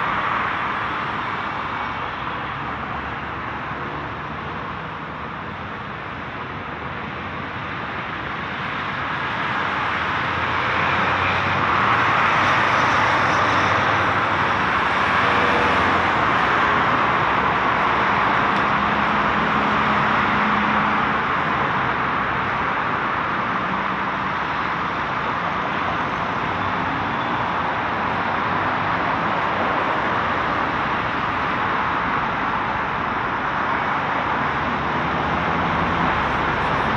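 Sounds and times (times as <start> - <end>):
road traffic noise: 0.0 - 36.9
passing vehicle engine hum: 33.8 - 36.9.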